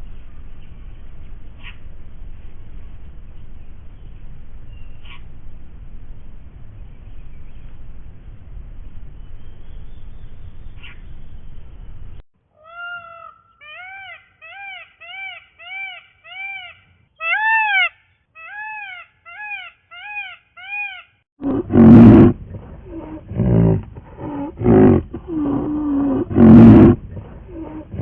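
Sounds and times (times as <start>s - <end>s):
animal cries high rising and falling: 12.6s - 28.0s
loud rough animal calls: 21.4s - 28.0s.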